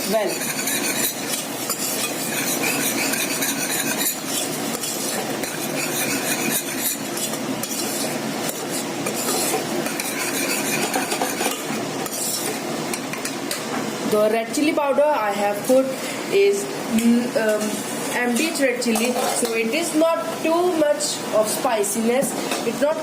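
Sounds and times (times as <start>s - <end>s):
spoon scraping a pot: 0.0s - 12.6s, 18.4s - 19.6s
paste sizzling in oil: 0.0s - 13.0s.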